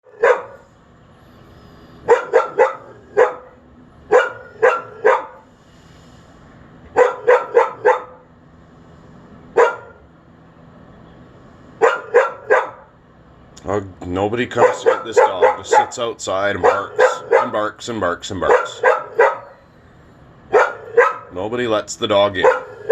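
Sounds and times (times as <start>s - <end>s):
dog barking: 0.0s - 0.6s, 2.0s - 5.5s, 6.9s - 8.2s, 9.6s - 10.0s, 11.8s - 12.9s, 14.5s - 17.7s, 18.4s - 19.6s, 20.5s - 21.4s, 22.3s - 22.9s.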